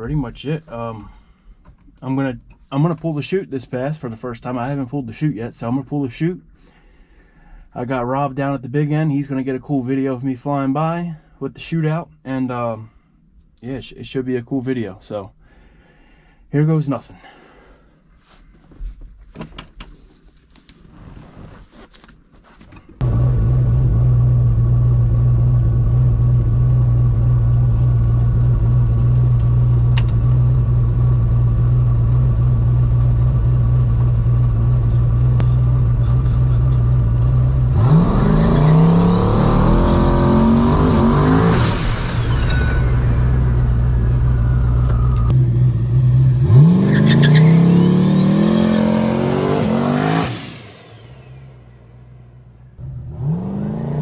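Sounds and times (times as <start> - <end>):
drag car engine accelerating: 23.0 - 54.0.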